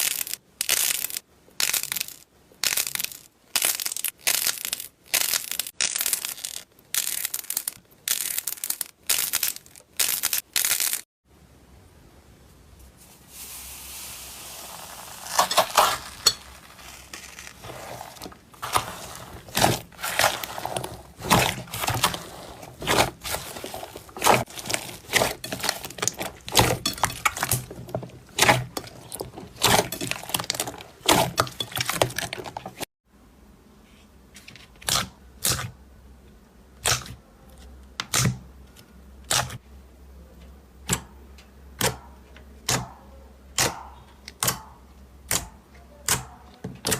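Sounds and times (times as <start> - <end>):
slime crackling and popping: 0.0 - 11.0, 14.6 - 32.6.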